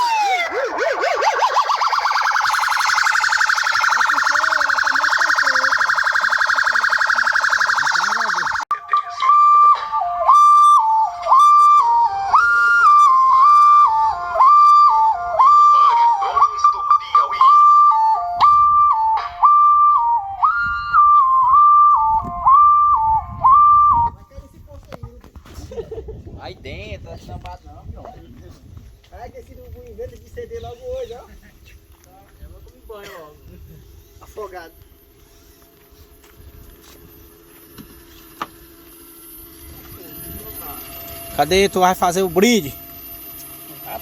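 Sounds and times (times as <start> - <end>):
electronic siren warbling: 0.0 - 24.2, 35.2 - 44.0
whistle-like tone tune: 0.0 - 24.2.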